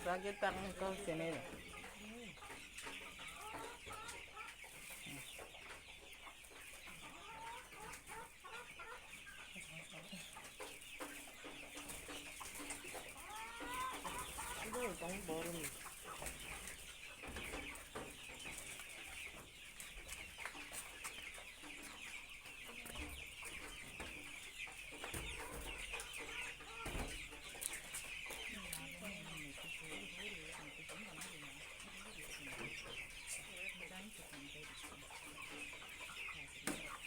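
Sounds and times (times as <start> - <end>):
chickens peeping and chirping: 0.0 - 37.0
loud pitch-sweeping chicken calls: 13.1 - 16.8.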